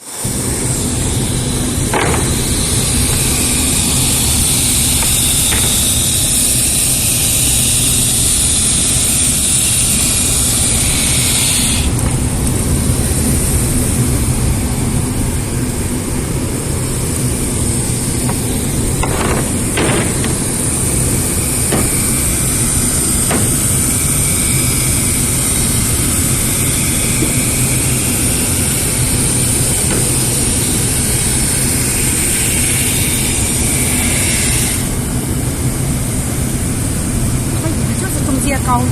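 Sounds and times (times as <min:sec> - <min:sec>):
machine hum with high hiss: 0:00.0 - 0:38.9
faint knocks: 0:18.2 - 0:24.0.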